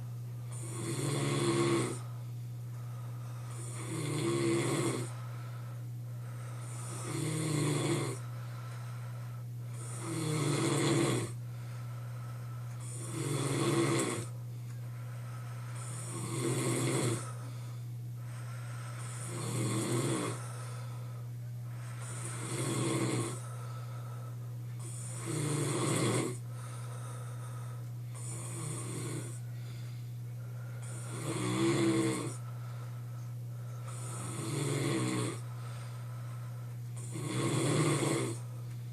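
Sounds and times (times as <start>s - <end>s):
steady low hum: 0.0s - 38.9s
man snoring loudly: 0.5s - 2.1s, 3.5s - 5.2s, 6.4s - 8.3s, 9.7s - 11.4s, 12.8s - 14.3s, 15.7s - 17.5s, 18.3s - 20.9s, 21.8s - 23.6s, 24.8s - 26.5s, 28.1s - 29.5s, 30.8s - 32.4s, 33.9s - 35.5s, 37.0s - 38.5s.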